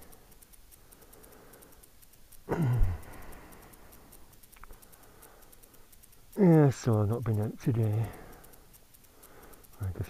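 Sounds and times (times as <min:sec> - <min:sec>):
faint small clicks: 0:00.0 - 0:10.0
man grunting: 0:02.5 - 0:03.3.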